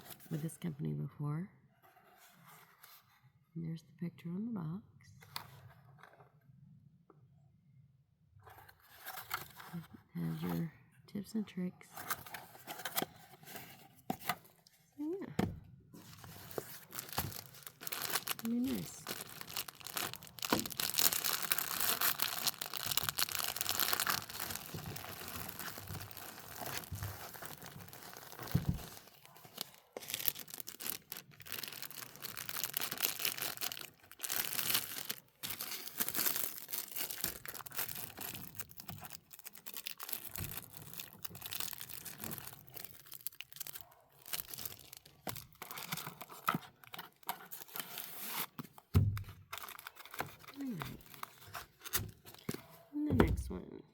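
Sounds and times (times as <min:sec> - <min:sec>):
plastic packaging crinkling: 0:16.0 - 0:52.8.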